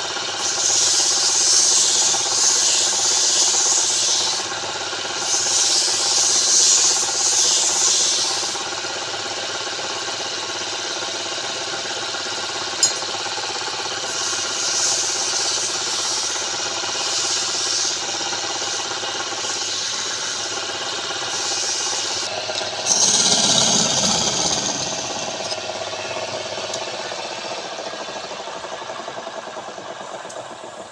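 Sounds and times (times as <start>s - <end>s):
tool rubbing spinning wood: 0.3s - 8.8s, 17.0s - 30.5s
wood lathe running: 18.4s - 30.2s.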